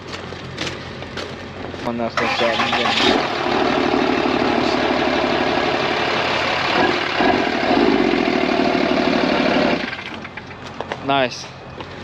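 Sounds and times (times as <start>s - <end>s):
pickup truck engine running: 2.4s - 10.8s.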